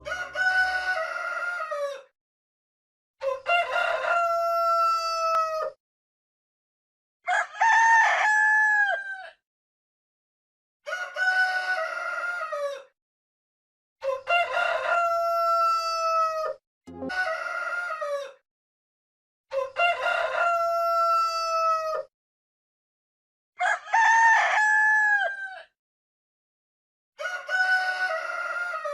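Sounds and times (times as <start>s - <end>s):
rooster crowing: 0.0s - 2.1s, 3.2s - 5.8s, 7.3s - 9.4s, 10.8s - 12.9s, 14.0s - 18.4s, 19.5s - 22.1s, 23.6s - 25.7s, 27.2s - 28.9s.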